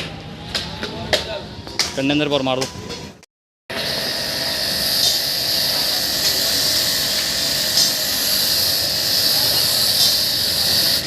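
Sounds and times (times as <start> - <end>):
pressure washer jet spraying water: 3.7 - 11.0.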